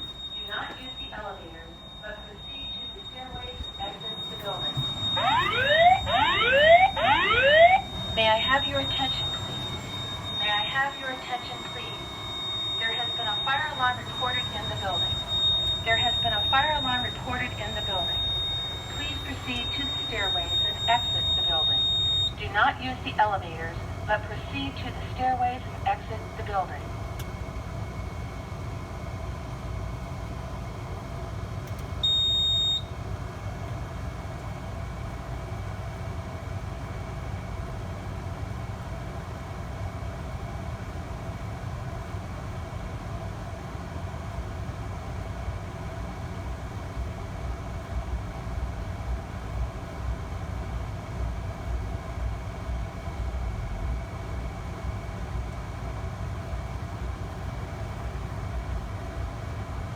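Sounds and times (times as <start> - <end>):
high-pitched electronic beep: 0.0 - 22.3
steady low hum: 0.0 - 59.9.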